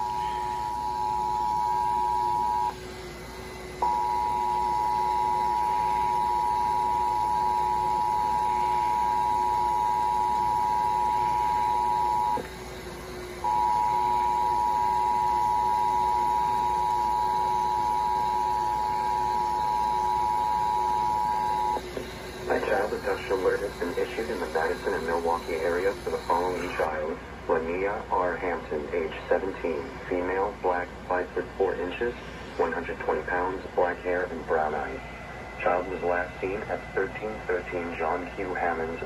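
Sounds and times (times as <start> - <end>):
two-tone alert signal: 0.0 - 2.8, 3.8 - 12.4, 13.4 - 26.9.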